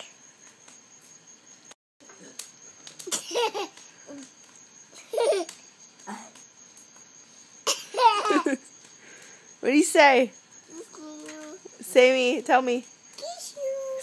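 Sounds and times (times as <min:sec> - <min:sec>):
young child laughing: 0:03.0 - 0:03.8, 0:05.0 - 0:05.6, 0:07.7 - 0:08.6.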